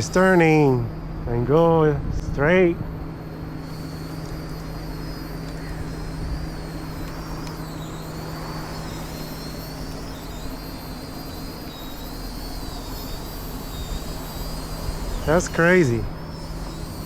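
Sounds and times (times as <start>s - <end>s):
drone propellers whining: 0.0s - 17.0s
low hum: 0.0s - 17.0s.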